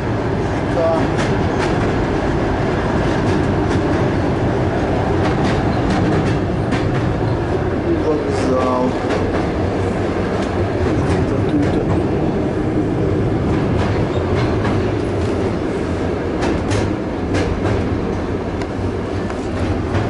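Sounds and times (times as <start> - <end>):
train carriage rumbling roar: 0.0 - 20.0.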